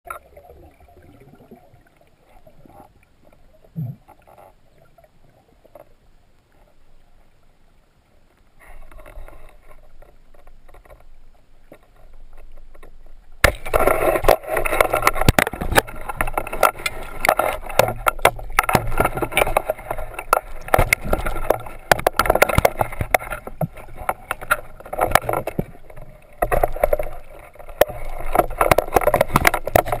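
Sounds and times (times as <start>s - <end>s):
water splashing: 0.0s - 6.6s, 8.6s - 30.0s
dense clatter of knocks in water: 12.4s - 30.0s.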